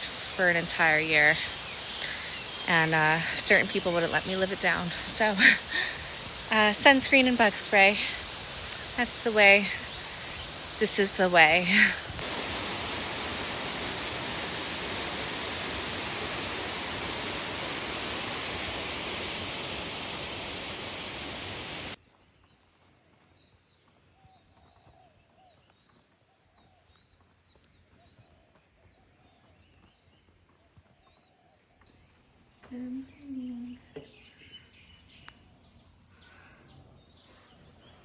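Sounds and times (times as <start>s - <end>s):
bird chirping: 0.0s - 12.2s
waterfall roaring: 0.0s - 22.0s.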